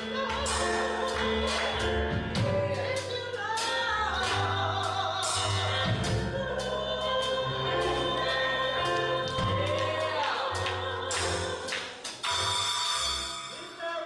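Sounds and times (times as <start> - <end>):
gospel singing voices: 0.0 - 12.5
bass accompaniment with beat: 0.0 - 13.3.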